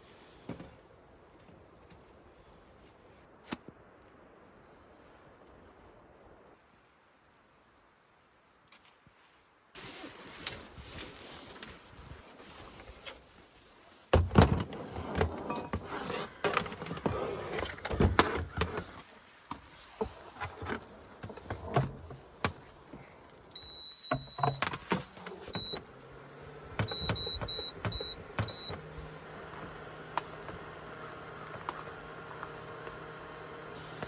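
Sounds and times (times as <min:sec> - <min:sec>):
knocking and handling clatter: 0:14.2 - 0:23.0, 0:26.8 - 0:32.5
high electronic beeps: 0:26.8 - 0:28.8.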